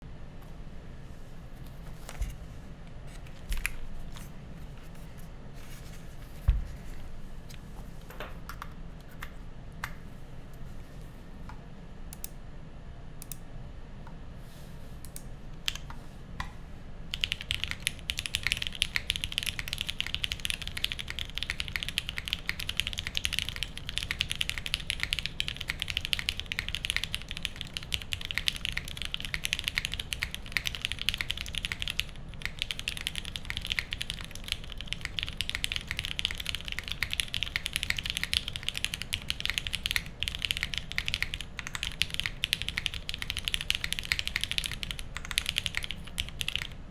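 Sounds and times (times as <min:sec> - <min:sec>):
typing on a mechanical keyboard: 0:15.7 - 0:15.9, 0:17.1 - 0:46.8.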